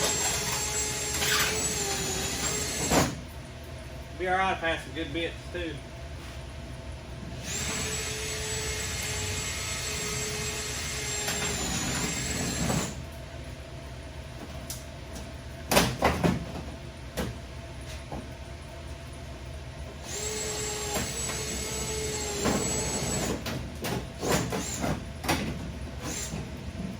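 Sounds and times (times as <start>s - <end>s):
power drill drilling: 0.0s - 3.1s, 7.4s - 13.0s, 20.0s - 23.4s, 24.3s - 24.8s, 26.0s - 26.4s.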